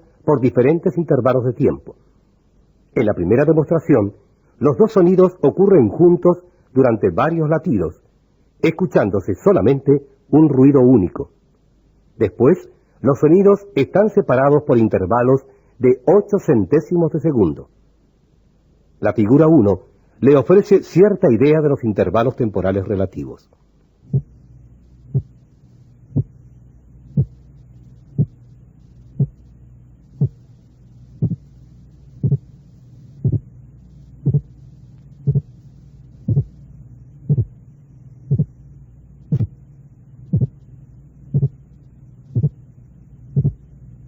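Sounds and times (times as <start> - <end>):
steady low hum: 0.0 - 44.0
simulated heartbeat sounds: 24.1 - 24.4, 25.0 - 25.4, 26.1 - 26.4, 27.1 - 28.5, 29.1 - 29.5, 30.1 - 34.6, 35.2 - 36.6, 37.2 - 37.6, 38.2 - 38.6, 39.3 - 39.6, 40.3 - 40.6, 41.3 - 41.6, 42.3 - 42.6, 43.3 - 43.7.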